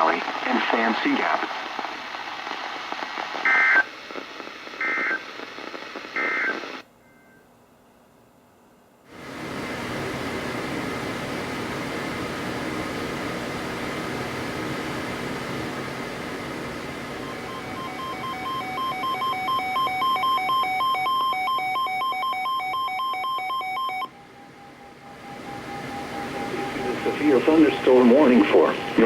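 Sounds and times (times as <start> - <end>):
radio static hiss: 0.0 - 6.8, 24.0 - 29.0.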